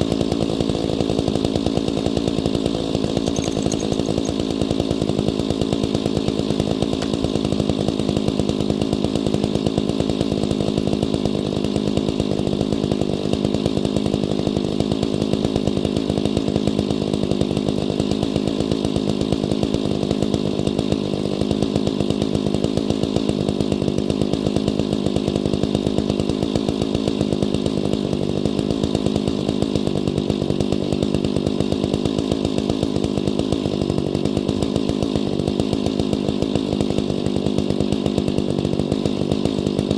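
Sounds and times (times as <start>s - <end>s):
chainsaw engine running: 0.0s - 39.9s.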